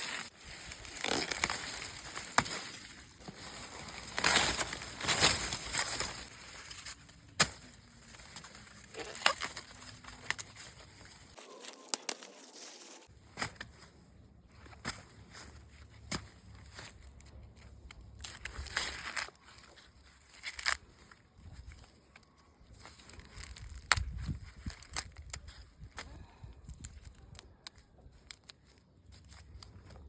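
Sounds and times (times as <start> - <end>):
corn ears snapping: 0.0 - 11.1, 22.8 - 30.0
corn leaves rustling: 0.0 - 26.0.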